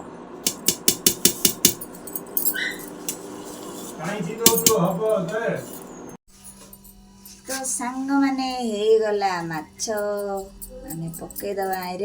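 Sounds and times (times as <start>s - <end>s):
person speaking: 3.9s - 5.7s
metal utensil clinking on pot: 4.4s - 5.0s.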